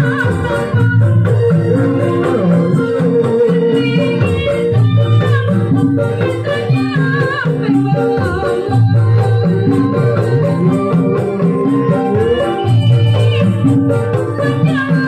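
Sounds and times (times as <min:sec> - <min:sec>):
live band with gamelan melody: 0:00.0 - 0:15.0.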